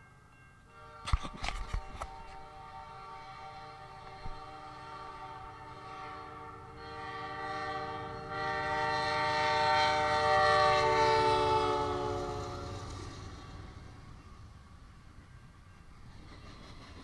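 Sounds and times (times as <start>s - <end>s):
locomotive air horn chord: 0.7s - 13.7s
train rumbling: 0.7s - 17.0s.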